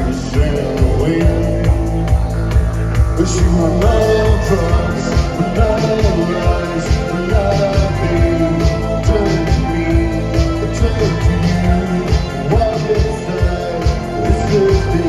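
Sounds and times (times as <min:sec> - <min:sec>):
driving drum beat: 0:00.0 - 0:15.0
live band playing: 0:00.0 - 0:15.0.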